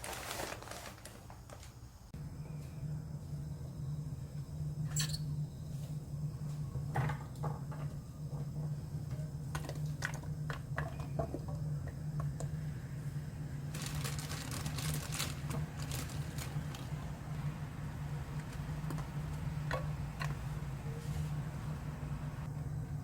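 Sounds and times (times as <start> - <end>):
steady low hum: 1.8 - 23.0.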